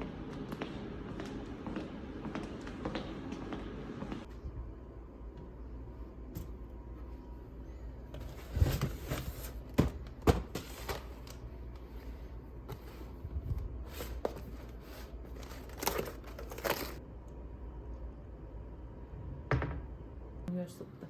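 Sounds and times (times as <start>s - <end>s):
crinkling and rustling: 8.1s - 17.0s.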